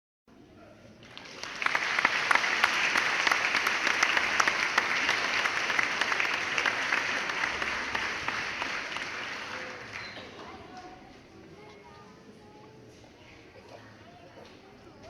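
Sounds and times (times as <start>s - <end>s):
crowd clapping: 1.0s - 10.9s.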